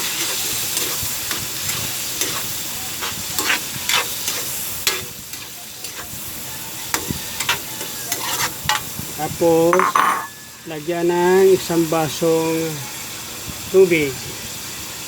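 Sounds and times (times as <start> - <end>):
meat balls sizzling in oil: 0.0 - 15.0
spatula scraping and knocking pan: 0.2 - 6.1, 6.9 - 8.9, 9.7 - 10.6.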